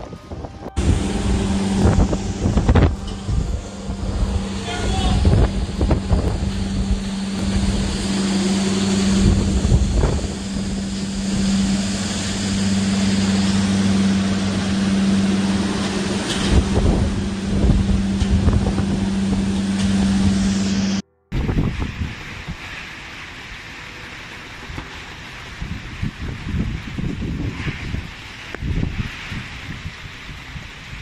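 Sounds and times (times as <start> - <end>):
steady low hum: 0.0 - 22.1
wind buffeting microphone: 0.0 - 23.3, 24.6 - 31.0.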